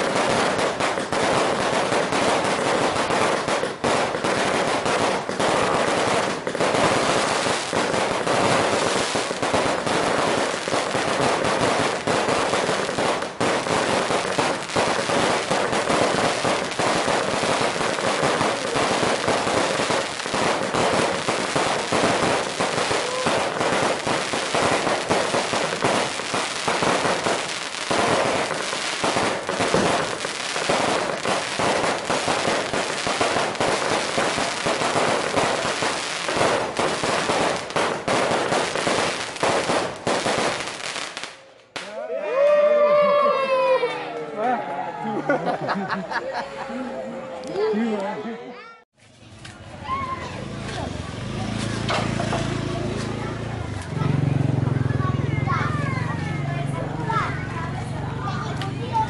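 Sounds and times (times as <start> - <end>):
fireworks crackling and popping: 0.0 - 42.0, 48.9 - 59.0.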